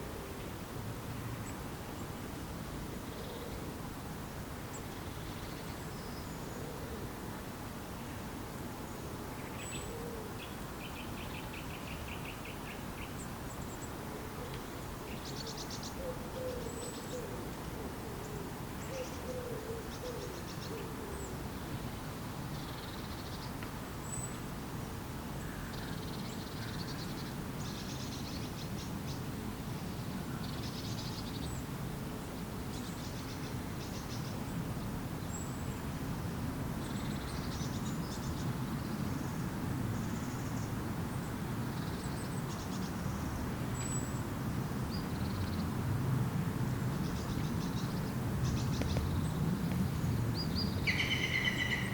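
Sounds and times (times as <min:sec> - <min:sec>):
background hiss: 0:00.0 - 0:51.9
birds calling and singing: 0:46.9 - 0:51.9
low wavering bird calls: 0:50.7 - 0:51.9.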